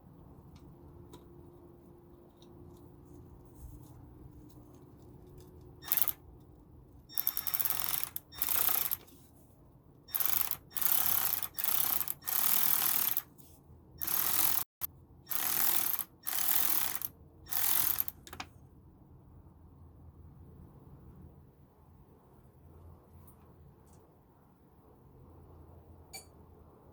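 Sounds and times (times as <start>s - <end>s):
ratchet wrench clicking: 5.8s - 6.2s, 7.1s - 9.1s, 10.1s - 13.3s, 14.0s - 14.7s, 15.3s - 18.2s.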